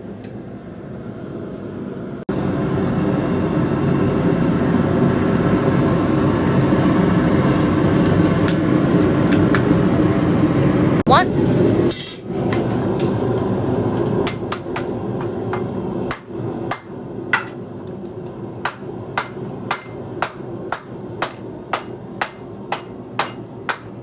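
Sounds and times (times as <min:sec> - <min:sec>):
hammer striking metal blade: 0:11.9 - 0:12.6, 0:15.5 - 0:17.6, 0:18.6 - 0:24.0.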